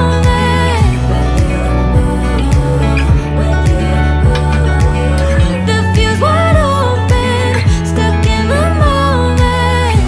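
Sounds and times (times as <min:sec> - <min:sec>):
pop music with kick-drum beat: 0:00.0 - 0:10.0.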